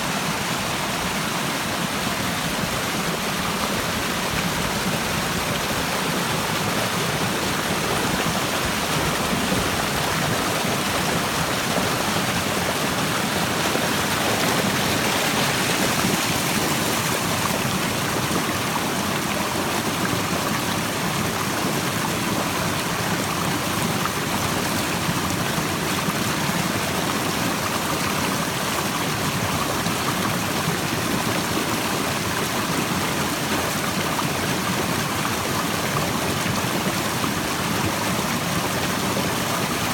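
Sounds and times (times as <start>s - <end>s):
stream running water: 0.0s - 39.9s.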